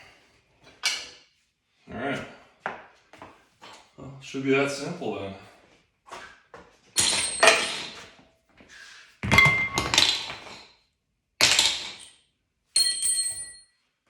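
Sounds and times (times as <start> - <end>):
metal tools clunking on hard surface: 0.7 - 1.2, 7.0 - 8.2.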